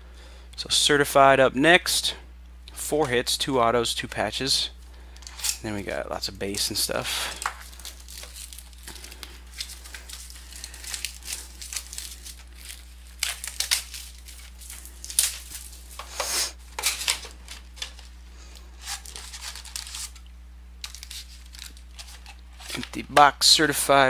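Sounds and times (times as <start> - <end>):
plastic wrapping crinkling and tearing: 5.3 - 18.2, 18.8 - 23.0
packs rustling: 6.4 - 20.2.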